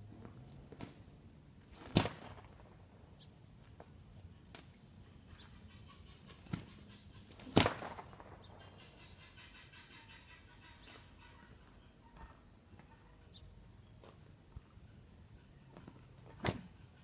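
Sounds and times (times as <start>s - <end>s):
whip cracking: 1.8s - 2.5s, 7.4s - 8.2s.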